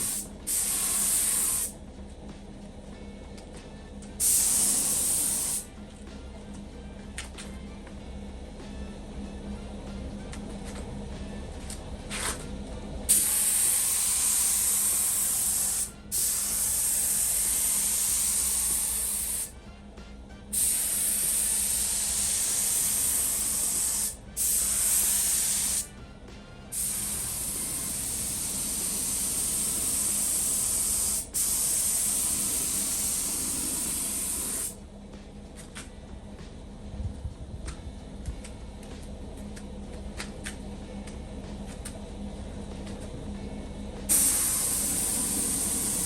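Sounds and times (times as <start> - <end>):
spray paint hissing: 0.0 - 1.8, 4.2 - 5.7, 13.1 - 19.6, 20.5 - 25.9, 26.7 - 34.8, 44.1 - 46.0.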